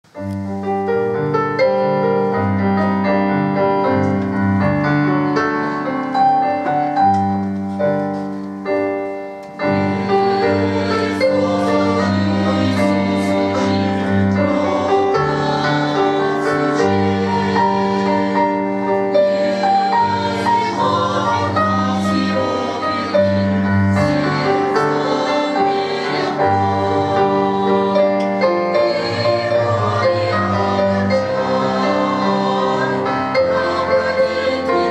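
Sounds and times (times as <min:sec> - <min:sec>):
keyboard accompaniment: 0:00.0 - 0:34.9
church choir singing hymn: 0:09.6 - 0:34.9.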